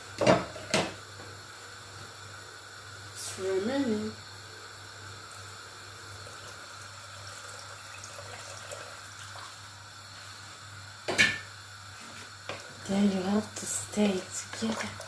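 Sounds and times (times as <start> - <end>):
liquid trickling into a pot: 6.1 - 9.7.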